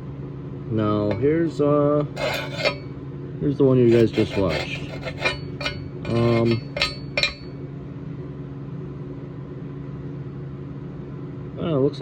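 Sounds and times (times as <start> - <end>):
steady low hum: 0.0 - 9.2
metal plates clinking: 1.1 - 1.4, 2.2 - 2.9, 3.9 - 7.6.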